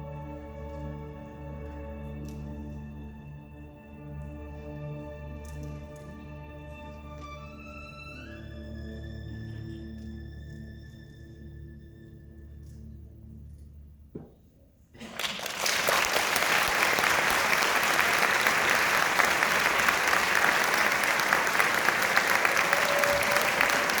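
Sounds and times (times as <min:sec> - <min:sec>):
audience applause: 0:15.0 - 0:24.0.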